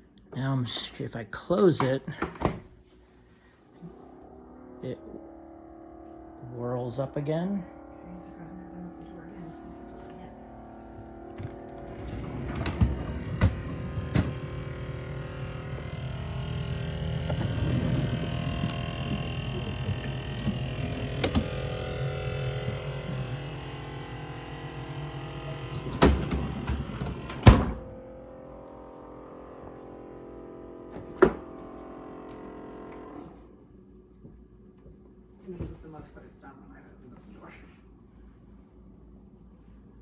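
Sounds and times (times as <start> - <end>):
refrigerator whirring: 8.6 - 36.0.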